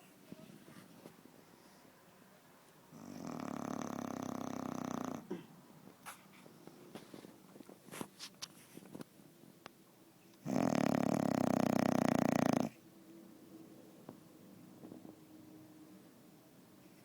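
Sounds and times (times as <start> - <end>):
dog snoring: 2.9 - 5.4, 10.4 - 12.8.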